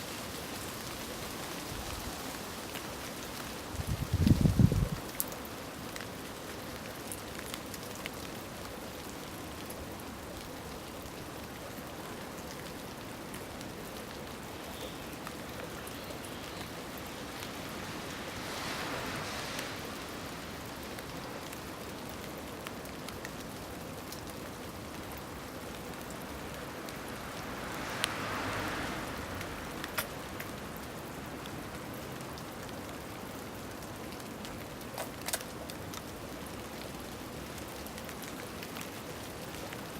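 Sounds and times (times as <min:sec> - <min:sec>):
faint ticks: 0:29.4 - 0:30.6.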